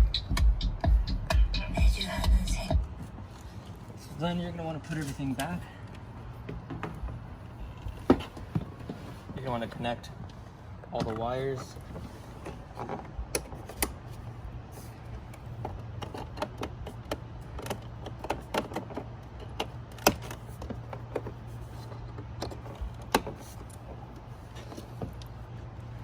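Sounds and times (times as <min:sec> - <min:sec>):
low hum: 0:00.0 - 0:03.5.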